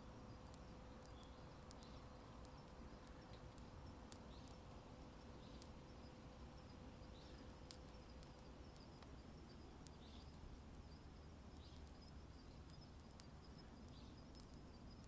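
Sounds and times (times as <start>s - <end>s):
wood fire crackling: 0.3s - 14.8s.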